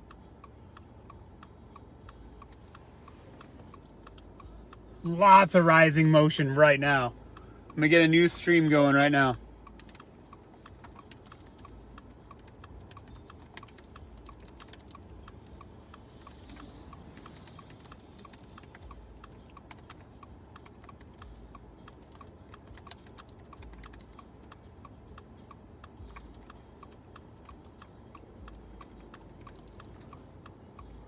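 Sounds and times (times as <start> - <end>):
faint regular ticking: 0.0 - 31.0
fingers tapping on phone: 9.7 - 30.6.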